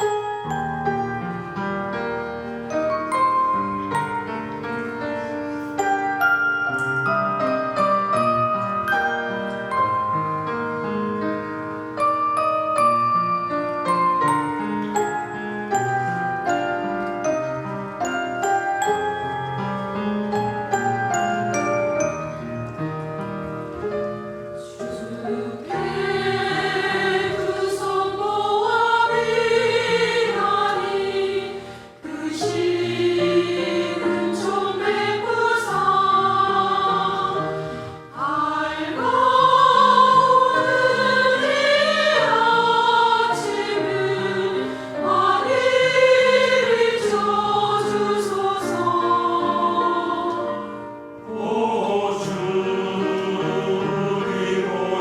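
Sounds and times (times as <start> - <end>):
church choir singing a hymn: 24.6 - 55.0.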